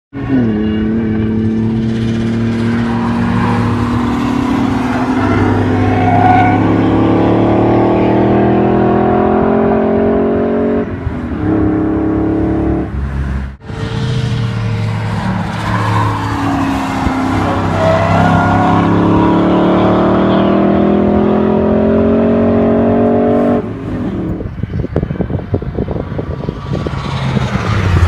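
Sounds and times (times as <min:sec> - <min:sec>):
car engine revving hard: 0:00.4 - 0:10.9, 0:13.9 - 0:24.4.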